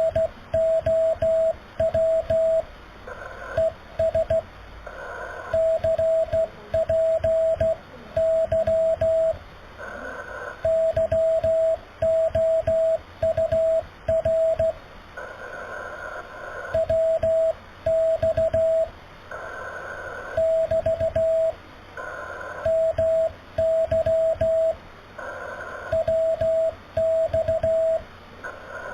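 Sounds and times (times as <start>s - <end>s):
morse code beeps: 0.0s - 2.6s, 3.6s - 4.4s, 5.5s - 9.4s, 10.6s - 14.8s, 16.8s - 18.9s, 20.4s - 21.6s, 22.6s - 24.8s, 25.9s - 28.0s
hissy radio noise: 4.8s - 5.6s, 9.7s - 10.6s, 15.2s - 16.8s.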